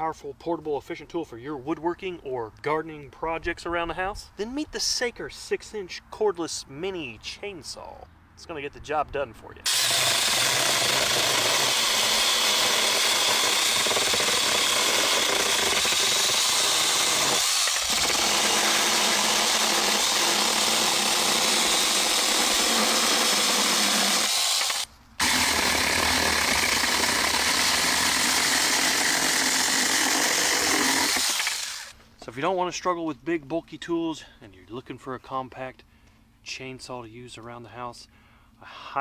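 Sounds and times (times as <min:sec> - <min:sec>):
mini chainsaw running: 0:09.7 - 0:31.9.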